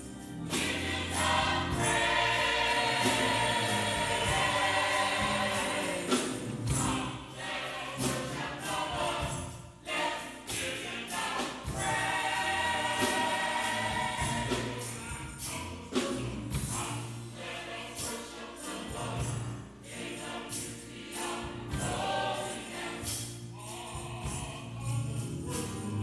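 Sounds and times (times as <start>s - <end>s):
choir singing gospel song: 0.0s - 26.0s
instrumental accompaniment: 0.0s - 26.0s
percussion hits: 0.0s - 26.0s.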